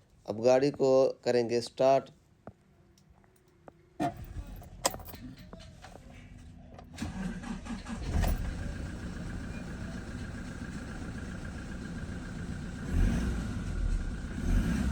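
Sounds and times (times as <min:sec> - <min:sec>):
diesel engine starting and idling: 0:04.0 - 0:14.9.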